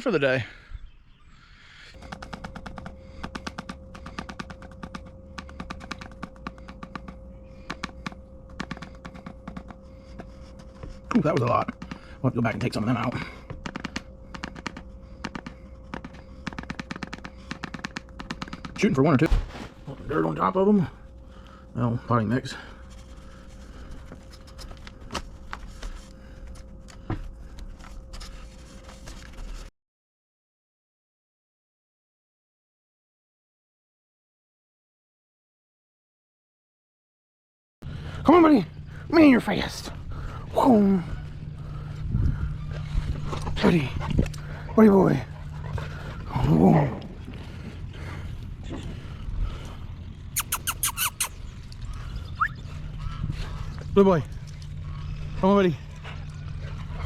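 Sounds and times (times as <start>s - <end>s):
steady high hum: 0.0s - 29.7s, 37.8s - 50.6s.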